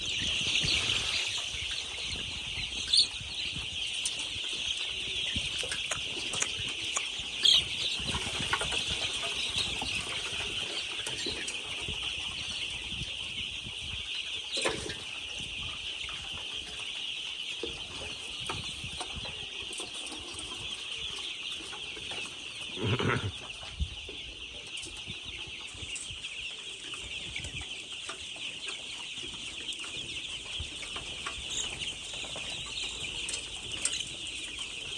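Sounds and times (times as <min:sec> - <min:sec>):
hens clucking: 0:00.0 - 0:34.9
loud low hen call: 0:22.8 - 0:23.4.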